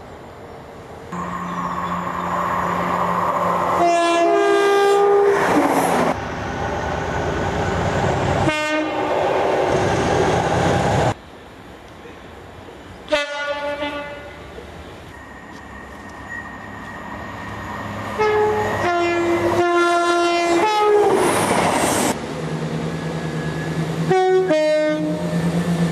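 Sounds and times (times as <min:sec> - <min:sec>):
train running: 0:00.0 - 0:25.9
train horn blasts: 0:03.7 - 0:05.6, 0:08.4 - 0:09.1, 0:13.1 - 0:14.5, 0:18.1 - 0:21.2, 0:24.1 - 0:25.3.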